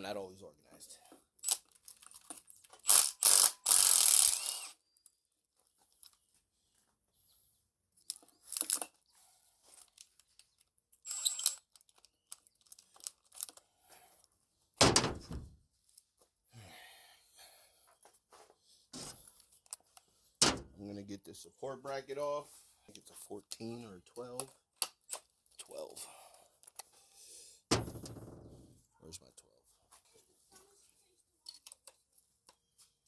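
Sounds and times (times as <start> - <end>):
heavy thunk: 14.8 - 15.6, 20.4 - 20.8, 27.7 - 28.6.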